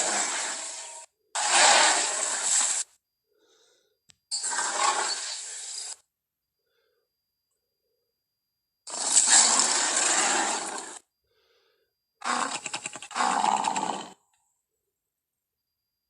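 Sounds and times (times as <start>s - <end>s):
creature roar: 8.9s - 11.0s, 12.2s - 14.2s.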